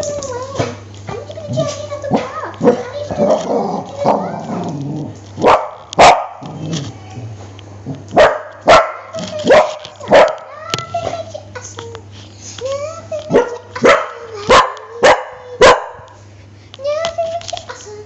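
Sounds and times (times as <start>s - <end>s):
dog barking: 5.4s - 6.5s, 8.1s - 10.5s, 13.3s - 16.1s.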